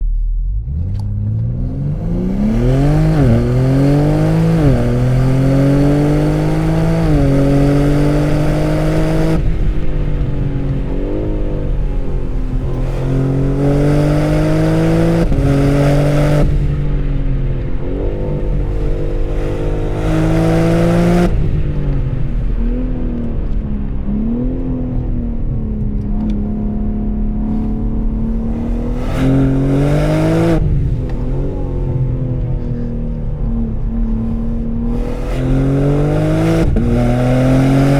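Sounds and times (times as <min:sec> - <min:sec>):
car engine accelerating: 0:00.0 - 0:37.9.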